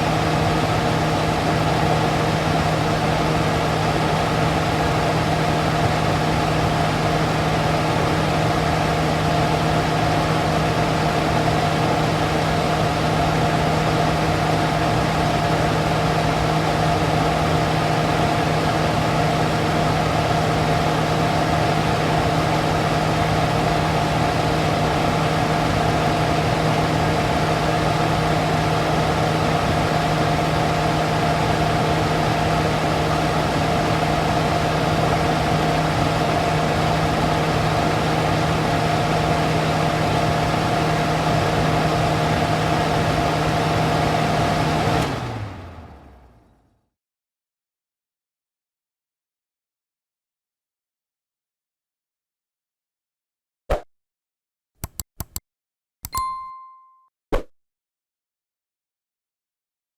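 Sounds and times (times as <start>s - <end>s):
extractor fan running: 0.0s - 46.5s.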